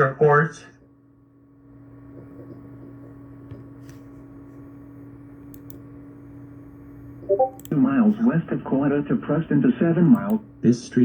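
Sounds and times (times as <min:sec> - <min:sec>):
low electrical hum: 0:00.0 - 0:11.0
faint clicks: 0:05.5 - 0:05.8.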